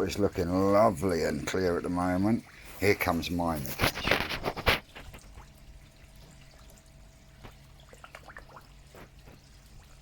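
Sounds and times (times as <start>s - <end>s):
water pouring into pond: 0.0s - 10.0s
water dripping: 4.8s - 10.0s.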